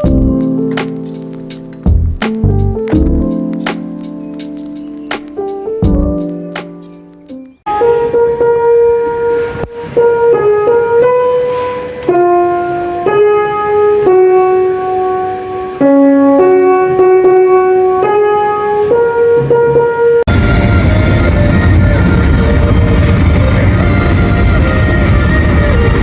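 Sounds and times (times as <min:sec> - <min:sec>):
keyboard melody: 0:00.0 - 0:26.0
loud noisy music passage: 0:07.7 - 0:26.0.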